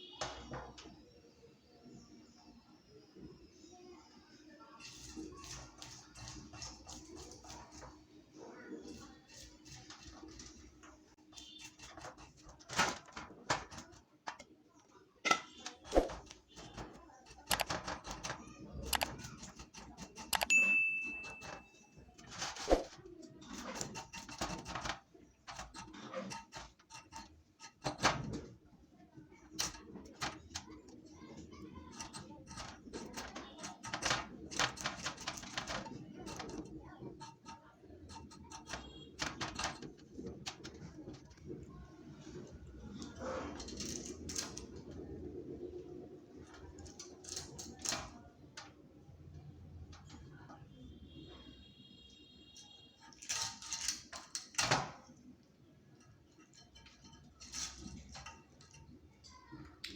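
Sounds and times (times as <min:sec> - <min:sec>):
kitchen utensils clicking and knocking: 0:00.0 - 0:01.1, 0:04.8 - 0:51.2, 0:52.5 - 0:59.9.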